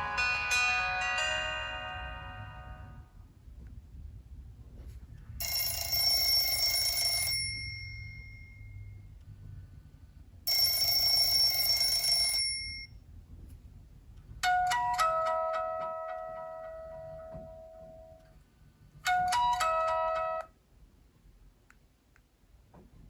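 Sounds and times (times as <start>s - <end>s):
phone ringtone ringing: 0.0s - 3.0s, 5.4s - 8.9s, 10.5s - 12.9s
ringtone melody of stepping notes: 0.0s - 3.0s.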